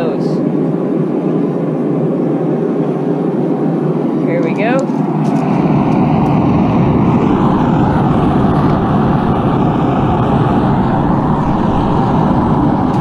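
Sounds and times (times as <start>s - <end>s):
forge rushing: 5.0s - 13.0s.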